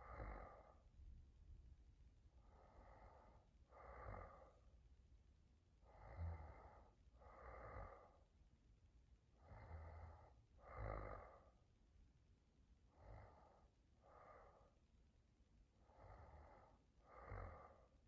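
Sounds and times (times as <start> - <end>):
woman snoring softly: 0.0 - 0.8, 2.6 - 4.6, 5.9 - 8.2, 9.4 - 11.6, 15.9 - 18.0.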